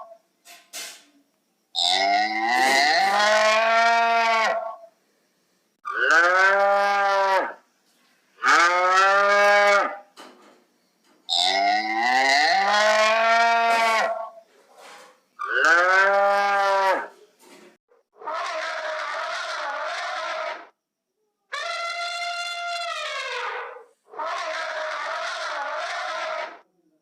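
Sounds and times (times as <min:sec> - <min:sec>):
cow mooing: 0:01.8 - 0:04.8, 0:05.9 - 0:07.6, 0:08.4 - 0:10.0, 0:11.4 - 0:14.3, 0:15.4 - 0:17.1.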